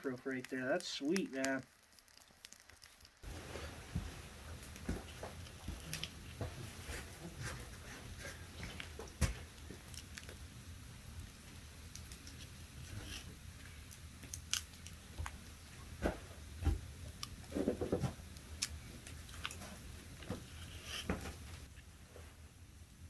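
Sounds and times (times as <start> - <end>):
sharp clicks and crunches: 0.0 - 3.2, 13.9 - 15.8.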